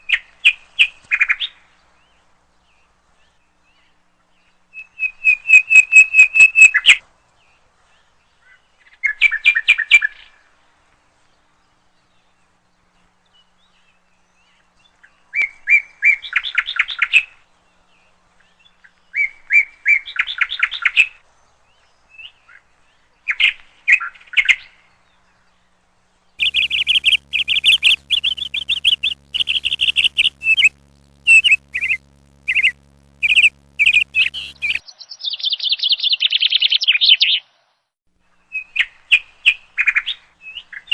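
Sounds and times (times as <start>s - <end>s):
songbird chirping: 26.4s - 37.2s.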